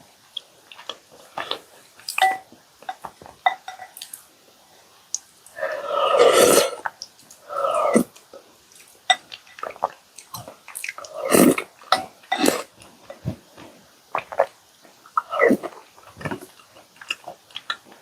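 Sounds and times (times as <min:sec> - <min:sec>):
chewing: 0:00.3 - 0:03.3, 0:05.2 - 0:18.0
wet slurping: 0:05.6 - 0:08.2, 0:09.6 - 0:14.6, 0:15.2 - 0:17.7.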